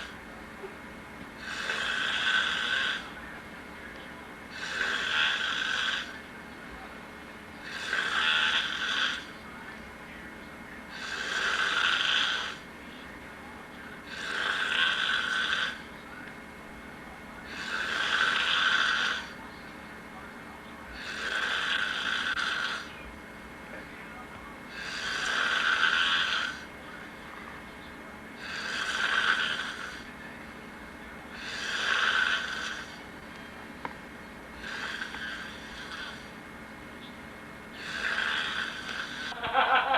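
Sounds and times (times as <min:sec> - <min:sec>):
person snoring: 0:01.4 - 0:03.1, 0:04.5 - 0:06.2, 0:07.6 - 0:09.3, 0:10.9 - 0:12.6, 0:14.1 - 0:15.8, 0:17.5 - 0:19.4, 0:21.0 - 0:22.9, 0:24.7 - 0:26.6, 0:28.4 - 0:30.1, 0:31.4 - 0:33.0, 0:34.6 - 0:36.3, 0:37.8 - 0:39.4
quiet breathing: 0:17.4 - 0:19.9, 0:31.3 - 0:33.6, 0:34.5 - 0:36.4, 0:37.7 - 0:39.4.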